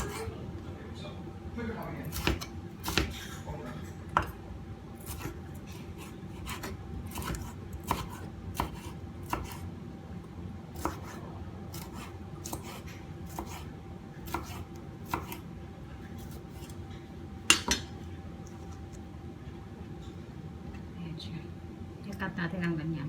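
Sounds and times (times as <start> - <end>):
knife cutting on chopping board: 0.0 - 0.3, 2.1 - 3.4, 5.0 - 9.6, 10.8 - 15.4, 16.2 - 16.8.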